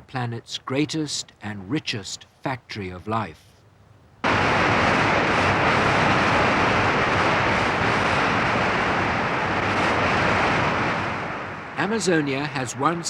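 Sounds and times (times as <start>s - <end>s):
rushing water: 4.2s - 13.0s.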